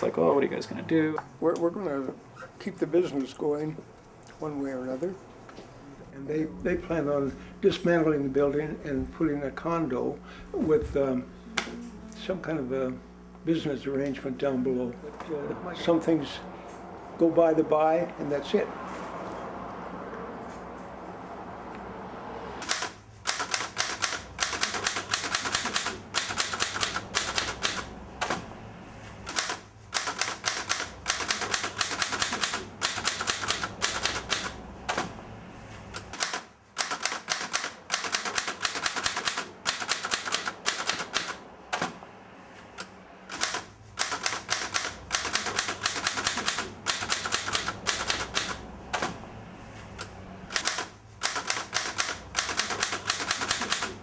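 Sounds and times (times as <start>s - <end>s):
typewriter keystrokes: 22.6s - 28.4s, 29.3s - 35.1s, 36.0s - 41.9s, 43.3s - 49.2s, 50.5s - 54.0s.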